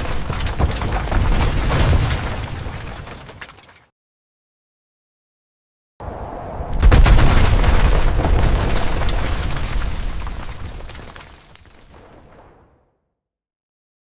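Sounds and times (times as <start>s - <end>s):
crashing debris crackling: 0.0s - 3.9s, 6.7s - 12.7s
heavy blast: 6.7s - 9.2s.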